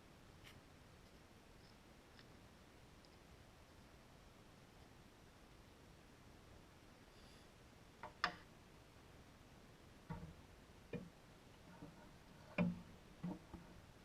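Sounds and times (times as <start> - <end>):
faint clicks and knocks: 10.0 - 14.0.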